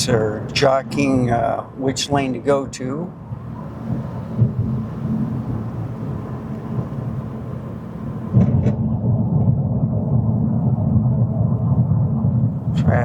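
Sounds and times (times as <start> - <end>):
car engine and tyres rumbling: 0.0 - 13.0.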